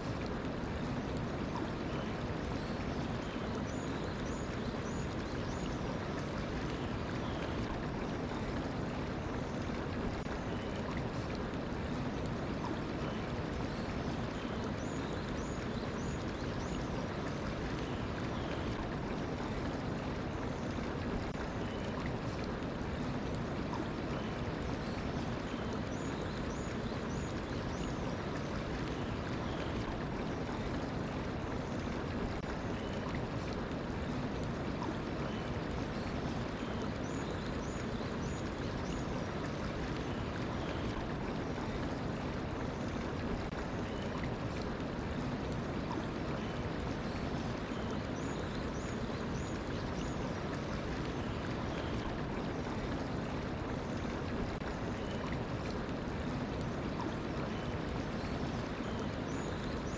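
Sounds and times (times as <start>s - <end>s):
stream water flowing: 0.0s - 59.9s.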